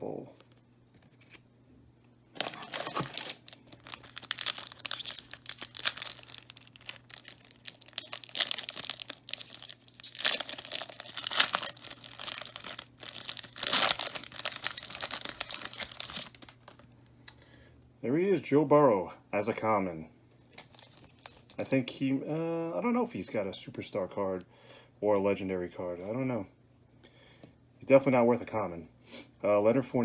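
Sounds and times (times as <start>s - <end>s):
wrapper crinkling and tearing: 2.4s - 16.9s.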